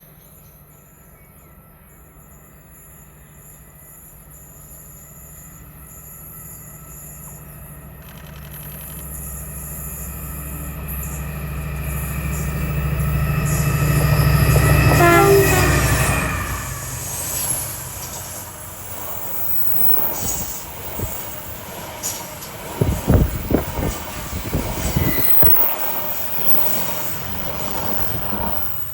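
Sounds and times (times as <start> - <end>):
diesel locomotive engine: 0.0 - 28.9
rail wagons rattling and knocking: 17.4 - 28.9.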